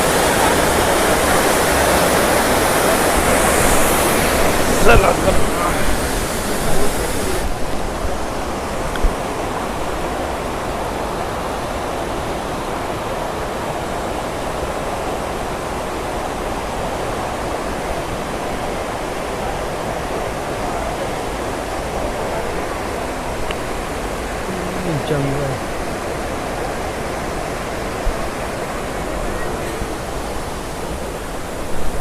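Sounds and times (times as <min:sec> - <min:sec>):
stream and waterfall rushing: 0:00.0 - 0:32.0.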